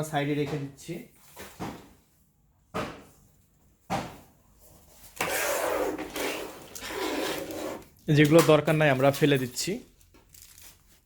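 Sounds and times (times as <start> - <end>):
packaging rustling: 8.8 - 11.0.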